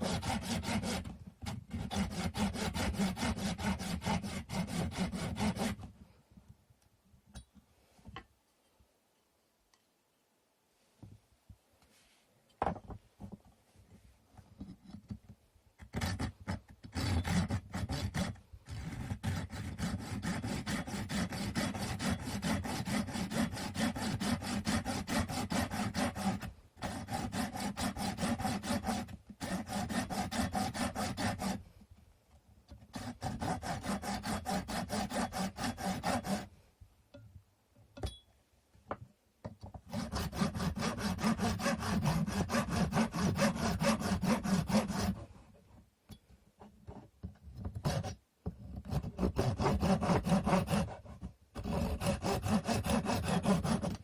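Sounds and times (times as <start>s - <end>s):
hand saw cutting wood: 0.0s - 5.9s, 15.9s - 31.6s, 32.9s - 36.5s, 39.8s - 45.2s, 48.8s - 54.0s.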